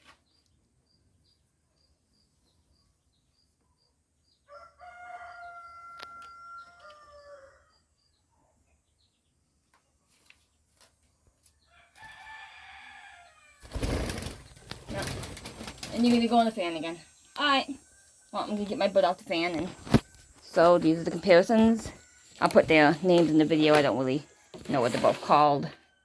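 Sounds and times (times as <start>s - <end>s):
dove calling: 13.6s - 25.5s.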